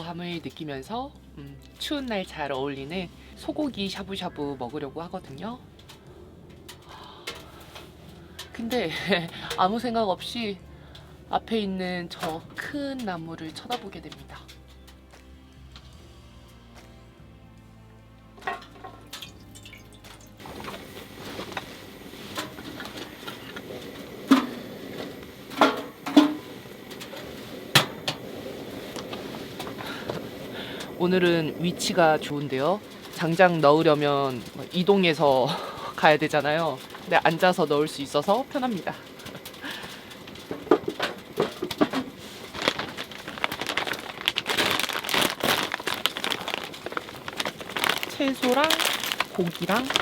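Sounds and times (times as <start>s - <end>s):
firewood hissing in stove: 5.9s - 11.4s, 20.4s - 50.0s
plastic packaging crinkling: 19.8s - 50.0s
wood cracking and knocking: 38.9s - 50.0s.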